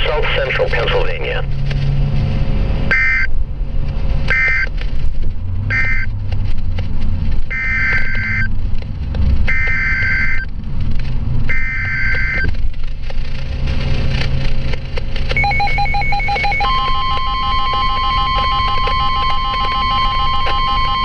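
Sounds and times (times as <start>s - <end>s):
buzzy two-tone data bursts: 7.5s - 8.5s, 9.5s - 10.4s.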